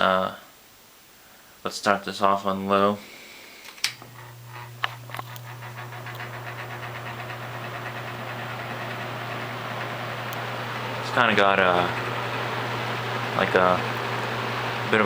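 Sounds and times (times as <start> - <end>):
fan motor humming: 3.7 - 15.0.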